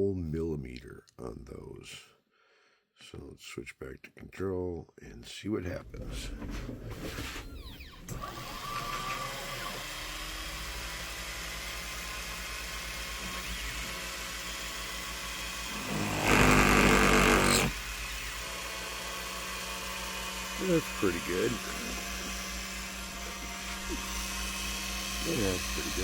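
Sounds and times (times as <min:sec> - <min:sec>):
stepper motors whining: 0:05.8 - 0:26.0
cutting tool rush: 0:06.0 - 0:26.0.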